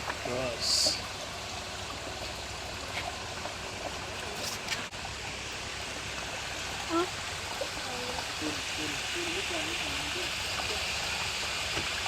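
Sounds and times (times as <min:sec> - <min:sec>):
stream water flowing: 0:00.0 - 0:12.0.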